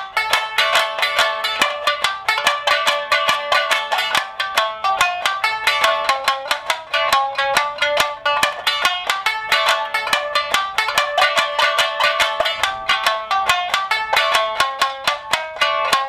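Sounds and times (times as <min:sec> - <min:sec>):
plucked lute notes: 0:00.0 - 0:16.0.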